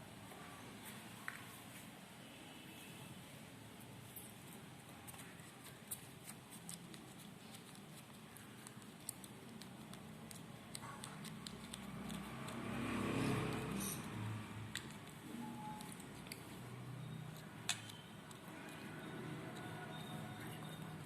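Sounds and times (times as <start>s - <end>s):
slime squishing: 5.0s - 13.9s, 14.6s - 20.8s.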